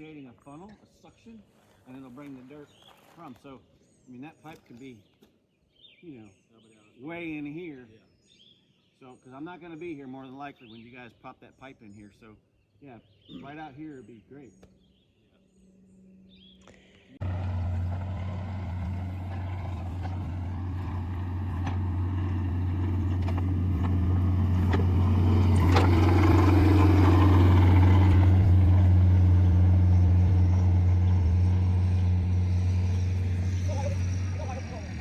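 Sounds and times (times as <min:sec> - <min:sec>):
excavator diesel engine running: 0:17.2 - 0:35.0.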